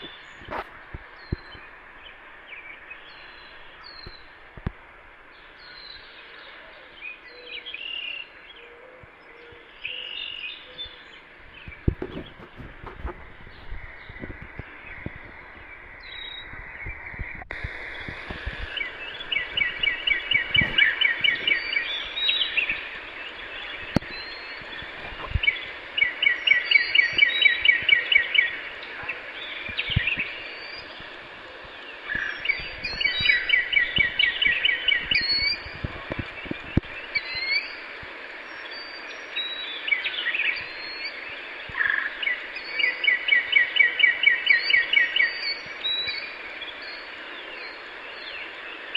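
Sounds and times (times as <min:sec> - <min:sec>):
background hiss: 0:00.0 - 0:48.9
birds chirping: 0:00.0 - 0:48.9.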